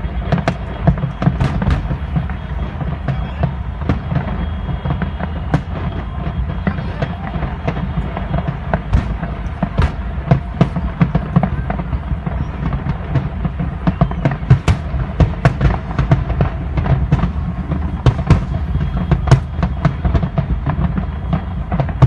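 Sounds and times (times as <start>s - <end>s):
fireworks bangs and crackling: 0.0s - 22.0s
deep rumble: 14.8s - 22.0s.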